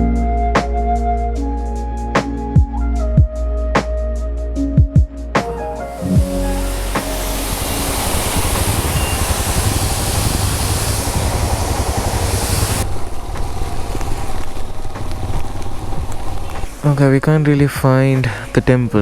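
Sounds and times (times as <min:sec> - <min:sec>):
motorcycle engine rumbling: 0:05.4 - 0:19.0
wind rushing on microphone: 0:05.4 - 0:19.0.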